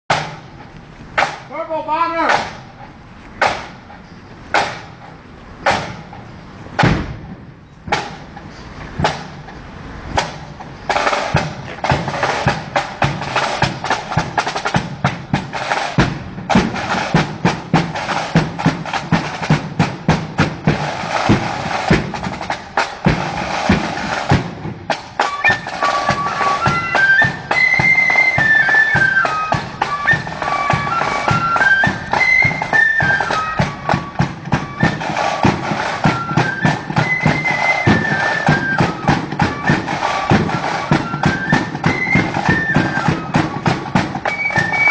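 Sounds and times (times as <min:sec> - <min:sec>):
drums playing march beat: 0:00.1 - 0:44.9
flutes playing a tune: 0:25.1 - 0:44.9.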